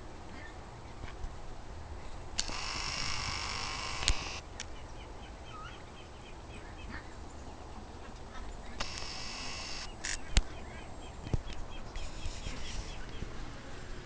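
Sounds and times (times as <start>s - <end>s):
sharp click: 3.9s - 4.7s.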